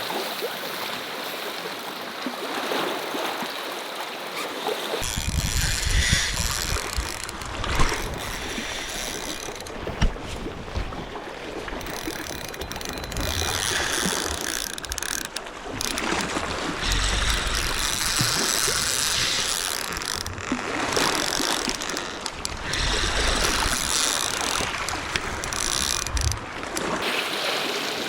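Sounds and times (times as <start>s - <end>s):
fishing reel cranking: 5.0s - 10.0s, 11.7s - 27.0s
wind rumbling on microphone: 5.0s - 27.0s.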